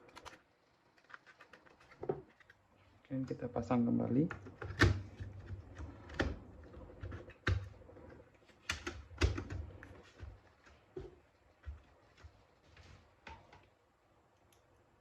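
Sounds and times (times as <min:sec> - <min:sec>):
plastic laptop parts clicking: 0:00.0 - 0:02.6, 0:04.1 - 0:07.7, 0:08.5 - 0:11.9.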